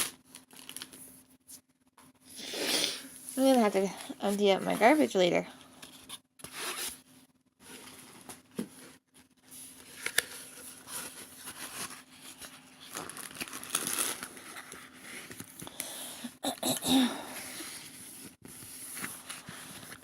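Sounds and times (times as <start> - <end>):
packaging crinkling and rustling: 0.0 - 1.1, 9.7 - 15.9.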